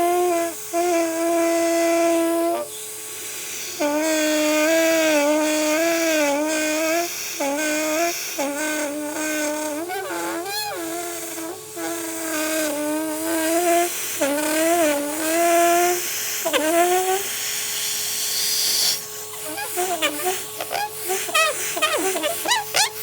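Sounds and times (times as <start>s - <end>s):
vacuum cleaner motor whining: 0.0s - 23.0s
short wavering squeal: 9.8s - 11.1s, 18.4s - 23.0s.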